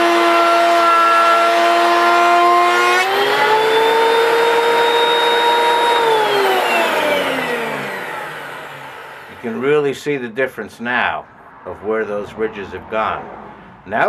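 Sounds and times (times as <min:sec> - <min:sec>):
thickness planer motor whine: 0:00.0 - 0:09.6.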